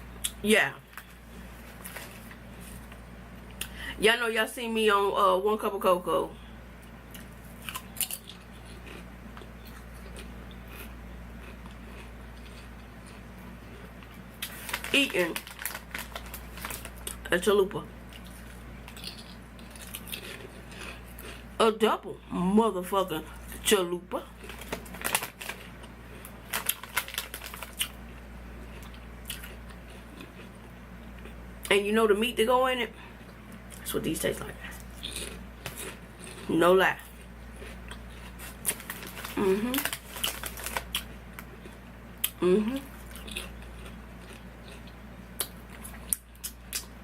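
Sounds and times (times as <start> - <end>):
steady low hum: 0.0 - 47.0
potato chips crunching: 0.2 - 3.0, 7.1 - 17.4, 18.0 - 21.5, 24.2 - 30.6, 34.7 - 47.0.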